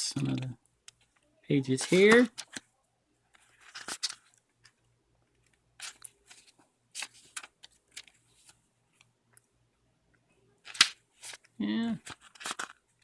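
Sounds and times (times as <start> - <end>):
book pages rustling: 0.2 - 2.6, 3.4 - 4.7, 5.8 - 8.6, 10.7 - 13.0.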